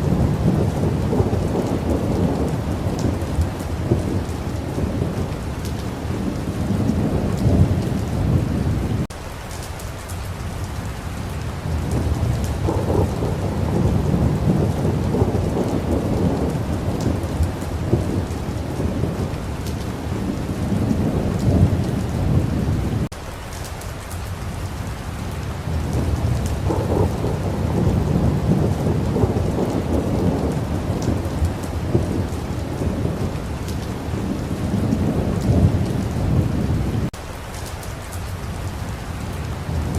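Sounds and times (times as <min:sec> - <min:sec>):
rolling thunder: 0:00.0 - 0:09.1, 0:11.2 - 0:23.1, 0:24.8 - 0:37.2
steady rain: 0:00.0 - 0:39.9.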